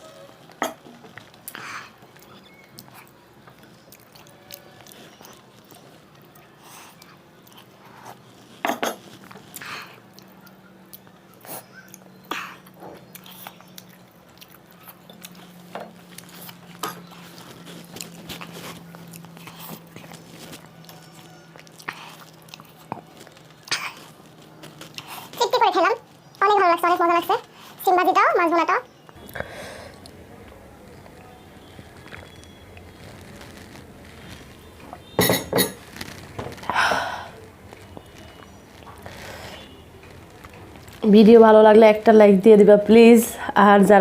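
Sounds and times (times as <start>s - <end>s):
faint low hum: 0.0s - 44.0s
chewing and mouth smacks: 0.5s - 25.4s.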